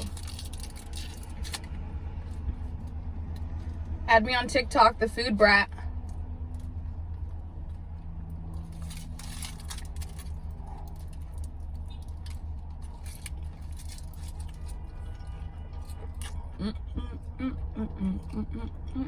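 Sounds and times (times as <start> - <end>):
small clicks and rustles: 6.0 - 16.2.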